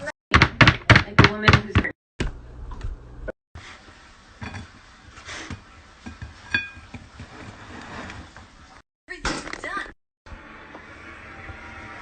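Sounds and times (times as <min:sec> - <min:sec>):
dish clinking: 0:06.1 - 0:07.0.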